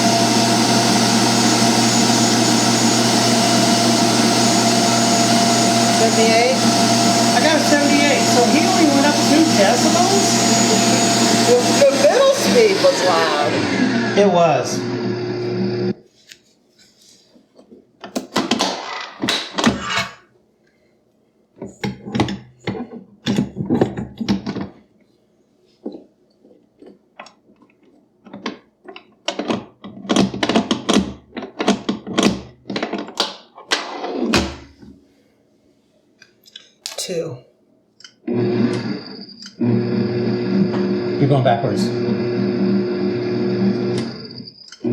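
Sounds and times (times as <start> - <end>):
mixer motor spinning down: 0.0 - 16.0, 38.3 - 44.9
clunks and rattles of mixer parts: 21.6 - 24.8.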